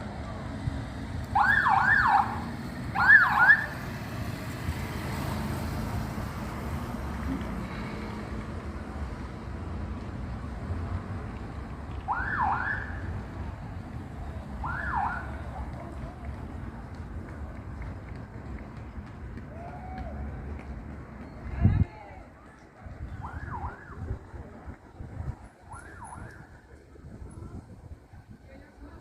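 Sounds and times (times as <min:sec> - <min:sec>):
siren whoops: 0:01.4 - 0:02.4.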